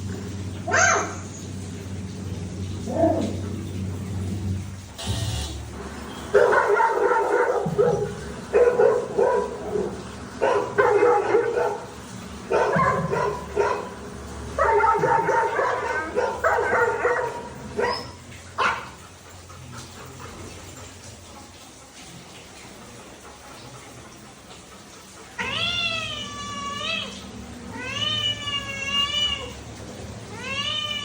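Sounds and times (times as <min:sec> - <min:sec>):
dog barking: 0:00.7 - 0:01.2, 0:06.3 - 0:19.0.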